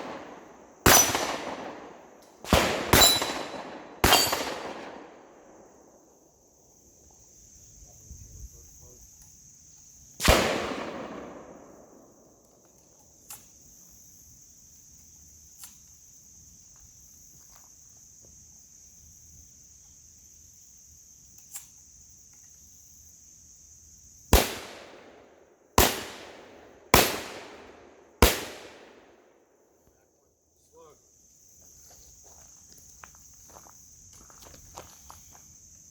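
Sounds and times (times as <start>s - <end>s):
gunshots with echoing tail: 0.0s - 5.4s, 10.2s - 12.1s, 24.4s - 25.2s, 25.8s - 29.2s.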